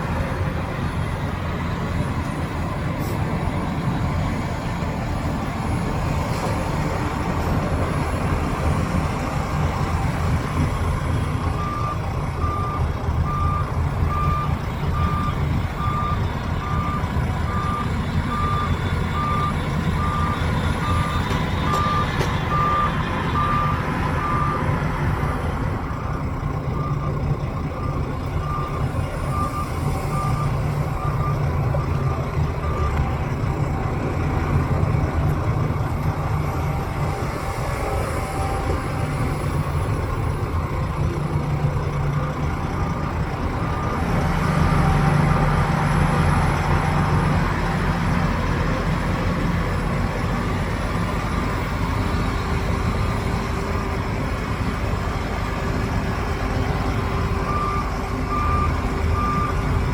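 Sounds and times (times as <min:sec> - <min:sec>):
diesel machinery rumbling: 0:00.0 - 0:59.9
reversing alarm beeping: 0:11.4 - 0:34.1, 0:56.8 - 0:59.9.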